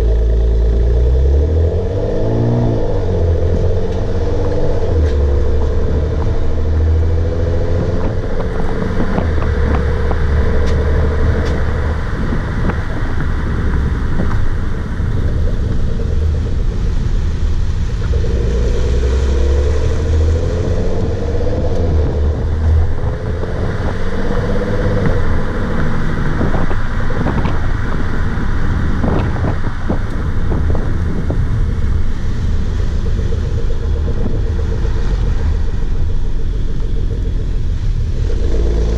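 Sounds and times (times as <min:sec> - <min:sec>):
road and engine rumble: 0:00.0 - 0:38.9.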